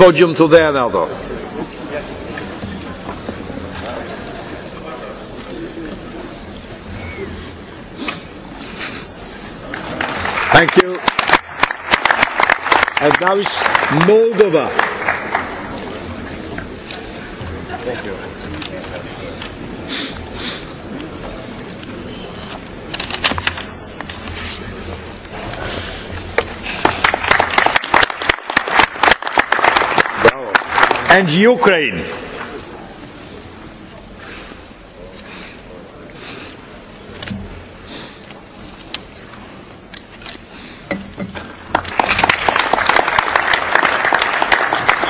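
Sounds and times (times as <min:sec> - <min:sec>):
sharp claps: 0:09.7 - 0:15.9, 0:26.4 - 0:31.1, 0:41.7 - 0:45.0
applause: 0:09.7 - 0:16.1, 0:26.6 - 0:31.4, 0:41.7 - 0:45.0.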